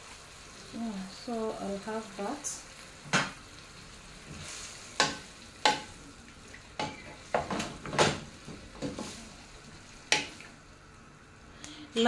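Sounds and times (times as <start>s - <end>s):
low sizzle from pan: 0.0s - 12.0s
utensil scraping a frying pan: 8.8s - 9.4s.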